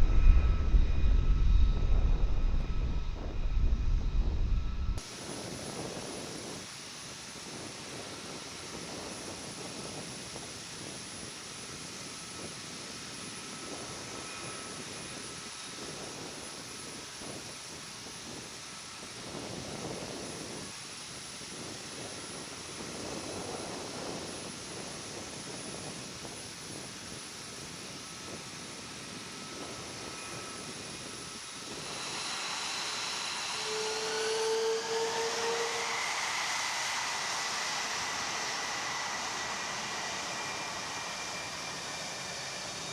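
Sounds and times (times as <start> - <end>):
jet engine rushing: 0.0 - 6.6, 28.1 - 42.9
turbine whine rising in pitch: 0.0 - 10.0, 22.0 - 42.9.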